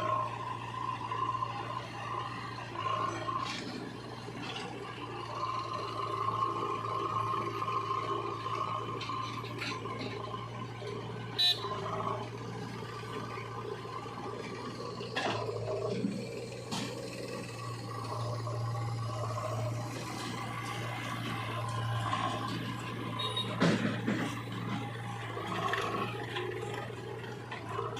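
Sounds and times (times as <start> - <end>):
diesel machinery running: 0.0 - 27.9
knocks and clanks: 22.3 - 25.7.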